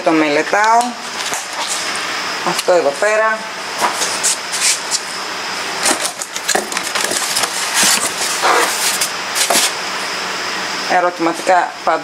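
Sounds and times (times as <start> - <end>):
packaging crinkling and rustling: 5.8 - 9.8.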